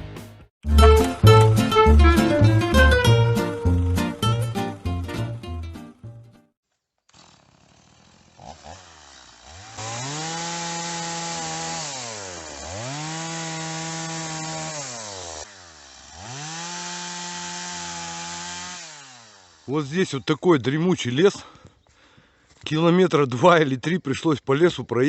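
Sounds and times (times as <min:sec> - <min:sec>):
chainsaw revving: 0:07.1 - 0:20.0.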